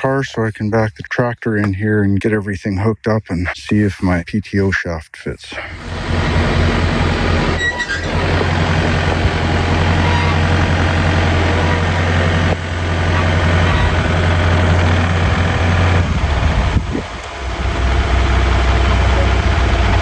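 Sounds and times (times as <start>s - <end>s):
tractor engine idling: 5.5s - 20.0s.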